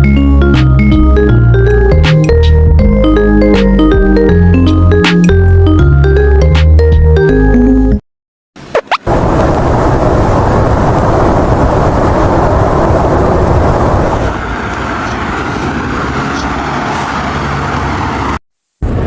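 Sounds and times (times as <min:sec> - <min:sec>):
loud rushing noise: 0:08.8 - 0:19.0
low rumble: 0:09.1 - 0:16.0.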